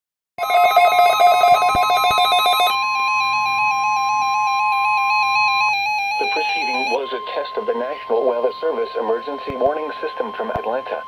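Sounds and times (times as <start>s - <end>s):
steady alarm tone: 0.4s - 11.0s.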